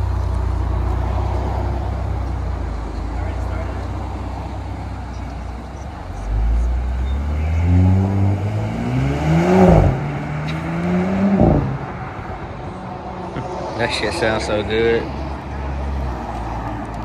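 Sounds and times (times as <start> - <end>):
car engine accelerating hard: 6.0 - 12.4.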